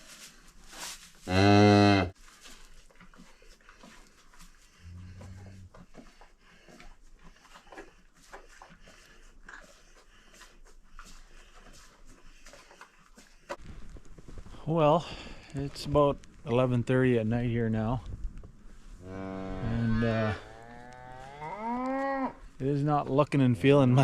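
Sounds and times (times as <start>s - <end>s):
cow mooing: 1.3s - 2.1s, 19.0s - 22.4s
faint rustling: 2.1s - 23.8s.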